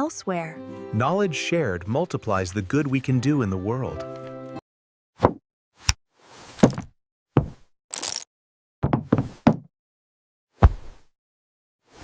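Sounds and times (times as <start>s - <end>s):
knocks and taps: 8.8s - 9.7s.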